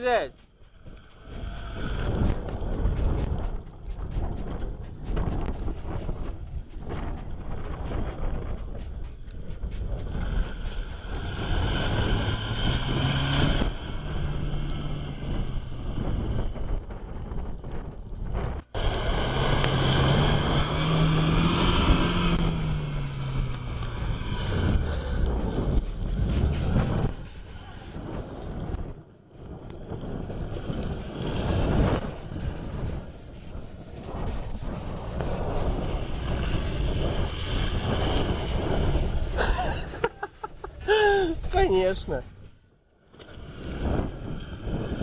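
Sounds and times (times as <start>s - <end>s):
wind on microphone: 0.0s - 45.0s
car engine revving: 0.6s - 16.8s, 18.8s - 28.0s, 34.4s - 40.1s.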